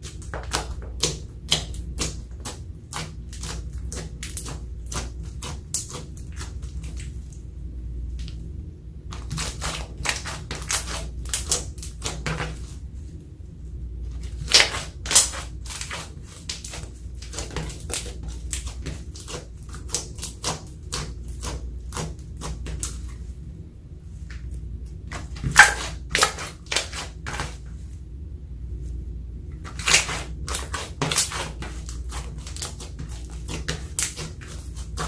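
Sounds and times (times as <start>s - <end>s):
slime squished by hand: 14.2s - 23.2s, 24.3s - 27.6s, 29.6s - 35.0s
slime popping: 25.1s - 27.5s.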